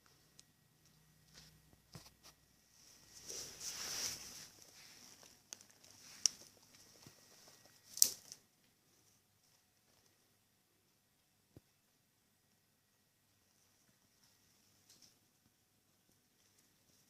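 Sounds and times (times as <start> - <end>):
rustling scrape: 1.3 - 7.9
bone clicking: 5.2 - 8.4.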